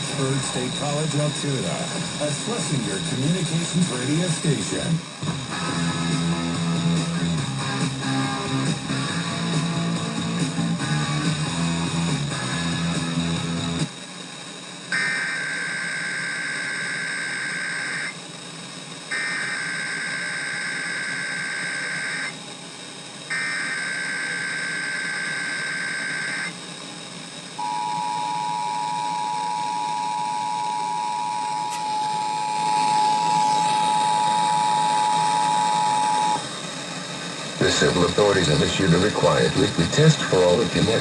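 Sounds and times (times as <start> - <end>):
radio hiss: 0.0 - 41.0
warbling digital data tones: 15.0 - 18.2, 19.1 - 22.4, 23.3 - 26.6, 27.6 - 41.0
steady two-tone attention signal: 27.6 - 36.5.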